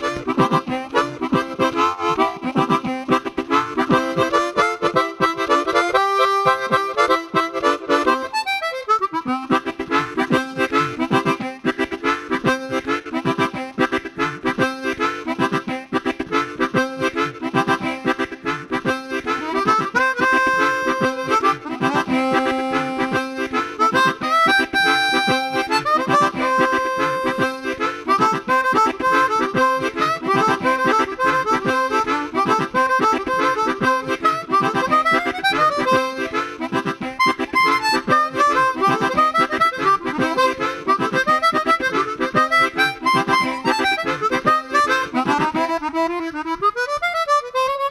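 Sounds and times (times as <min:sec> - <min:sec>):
harmonica fast melody: 0:00.0 - 0:47.9.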